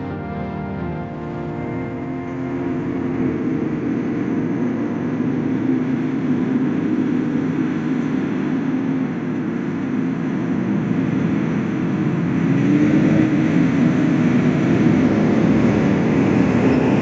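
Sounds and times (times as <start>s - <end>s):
background music: 0.0s - 6.0s
road traffic rumble: 0.0s - 17.0s.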